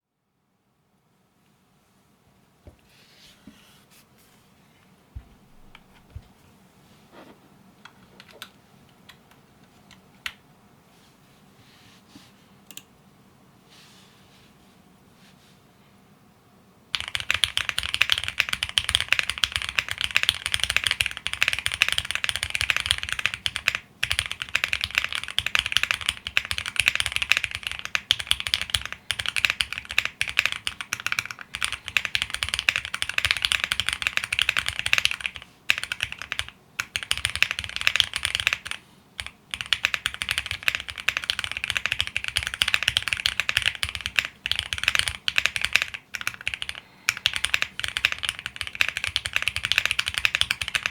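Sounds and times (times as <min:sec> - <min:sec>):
mechanical keyboard typing: 0:16.9 - 0:50.9.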